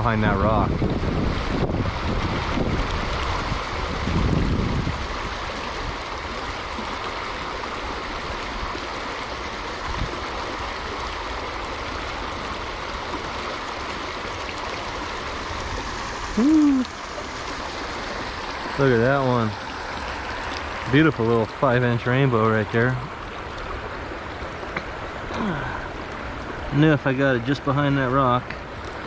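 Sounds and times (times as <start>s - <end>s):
wind rumble on microphone: 0.0s - 6.9s, 9.7s - 10.5s
creek water rushing over rocks: 0.0s - 29.0s
loud voiced exclamation: 16.4s - 16.9s.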